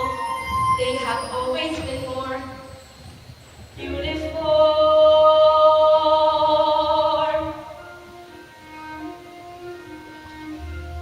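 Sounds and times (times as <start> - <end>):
instrumental accompaniment: 0.0 - 3.1, 6.9 - 11.0.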